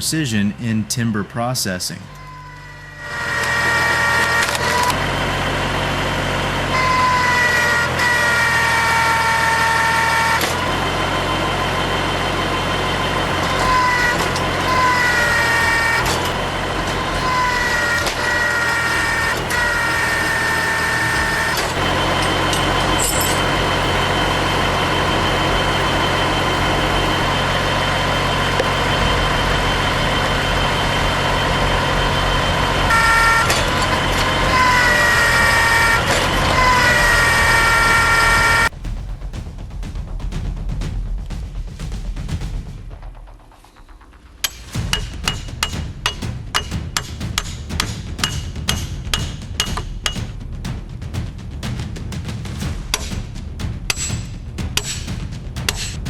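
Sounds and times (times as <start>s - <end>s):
high hydraulic whine: 0.0s - 38.7s
wood splitter engine and hydraulics: 0.0s - 38.7s, 43.5s - 50.2s, 52.7s - 56.0s.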